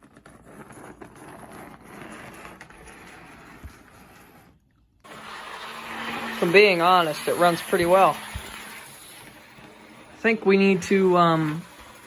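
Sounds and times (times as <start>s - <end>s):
model train motor whirring: 5.1s - 12.0s.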